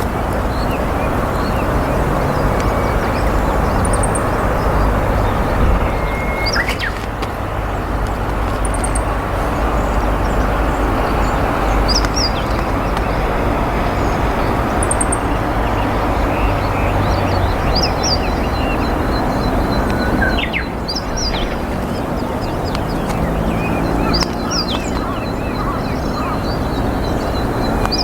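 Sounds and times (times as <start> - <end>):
steady low rumble: 0.0 - 27.9
bird singing trills: 0.0 - 28.0.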